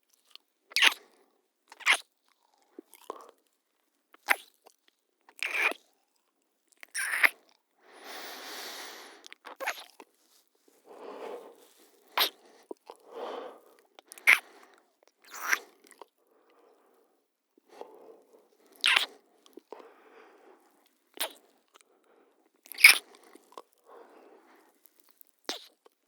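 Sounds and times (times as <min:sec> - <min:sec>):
breathing: 0:07.8 - 0:09.4, 0:10.3 - 0:15.0, 0:15.6 - 0:25.1
wet lip smacks: 0:12.2 - 0:13.0, 0:13.9 - 0:14.4, 0:15.3 - 0:16.1, 0:18.8 - 0:19.8, 0:21.2 - 0:21.4, 0:22.7 - 0:23.2, 0:25.5 - 0:25.9.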